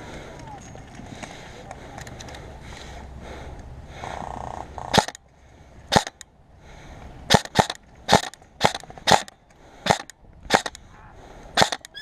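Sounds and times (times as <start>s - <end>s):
airsoft gun shots: 5.9s - 6.2s, 7.3s - 10.7s, 11.6s - 11.9s.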